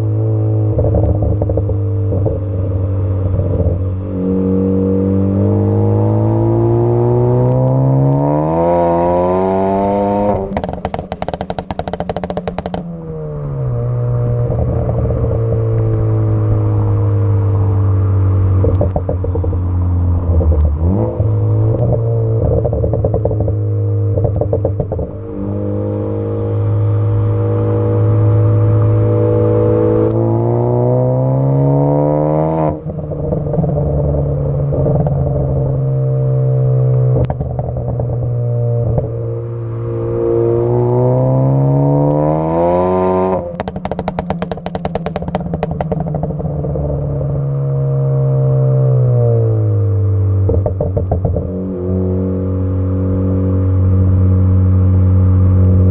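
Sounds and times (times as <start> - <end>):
car engine revving: 0.0 - 55.9
exhaust pops and crackles: 0.7 - 4.7, 9.8 - 13.0, 18.5 - 25.4, 32.5 - 36.0, 36.6 - 39.3, 42.0 - 47.8, 50.3 - 51.8.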